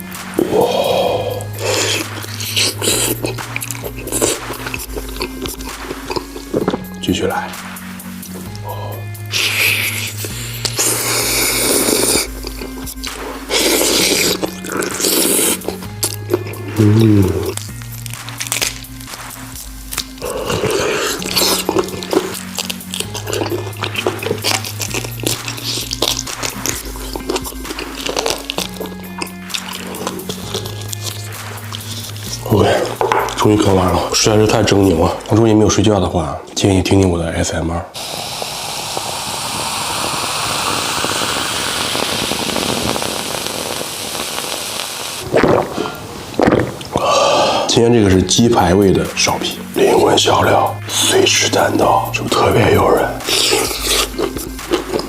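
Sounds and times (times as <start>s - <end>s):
wet chewing and gnawing: 0.0s - 7.0s, 8.2s - 35.4s, 45.2s - 47.6s, 50.9s - 55.0s
background music with bass line: 0.0s - 36.0s, 47.8s - 55.0s
food sizzling in hot oil: 9.3s - 16.5s, 17.2s - 32.4s, 38.0s - 45.3s, 53.2s - 55.0s.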